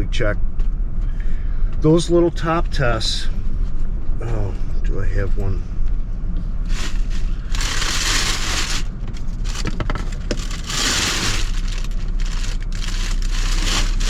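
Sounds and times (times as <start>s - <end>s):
rustling and crinkling gear: 6.6s - 14.0s.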